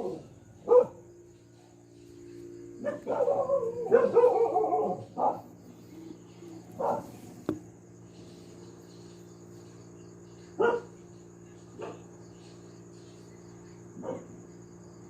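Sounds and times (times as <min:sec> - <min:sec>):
dog barking: 0:00.0 - 0:01.1, 0:02.8 - 0:05.5, 0:06.8 - 0:07.2, 0:10.6 - 0:11.0, 0:11.8 - 0:12.1, 0:14.0 - 0:14.3.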